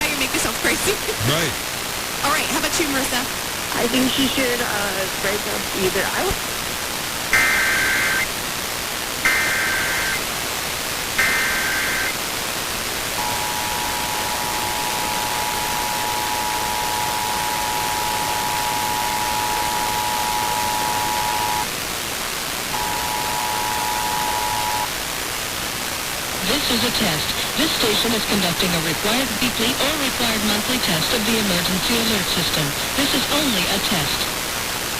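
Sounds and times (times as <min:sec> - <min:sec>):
static hiss: 0:00.0 - 0:34.9
screeching digital header bursts: 0:07.3 - 0:08.3, 0:09.2 - 0:10.2, 0:11.2 - 0:12.2.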